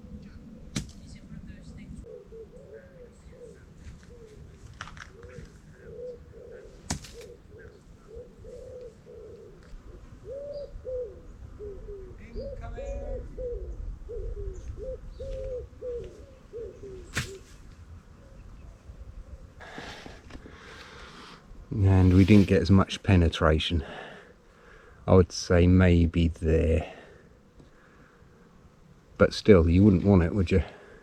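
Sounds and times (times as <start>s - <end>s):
pigeon cooing: 0.0s - 17.5s
low wind rumble: 0.0s - 31.0s.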